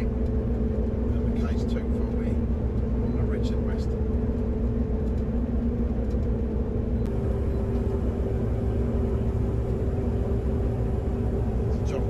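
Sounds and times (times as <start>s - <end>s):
combine harvester drone: 0.0s - 12.0s.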